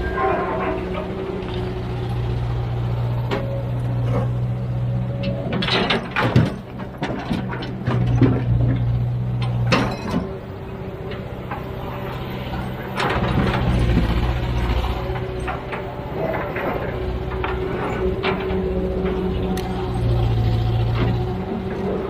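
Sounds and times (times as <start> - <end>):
diesel engine drone: 0.0 - 22.0
metal clanks and knocks: 5.1 - 10.4, 12.9 - 22.0.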